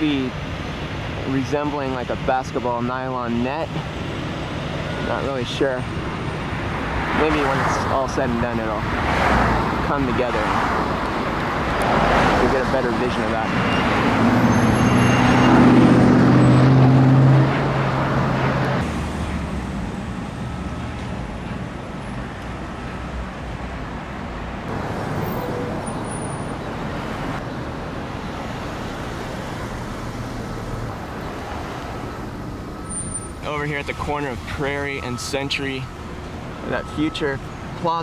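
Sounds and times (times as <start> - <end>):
road traffic: 0.0 - 38.0
vehicle engine passing close: 6.1 - 20.6.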